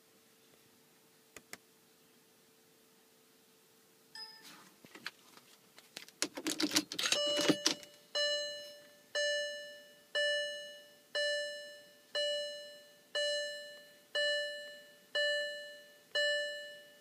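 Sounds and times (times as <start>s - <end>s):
clicks and rattles: 4.9s - 7.9s
car warning chime dinging: 7.1s - 17.0s.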